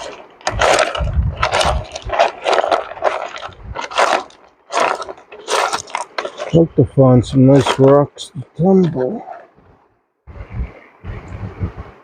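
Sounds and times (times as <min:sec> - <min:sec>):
hand tool scraping gravel: 0:00.0 - 0:09.6.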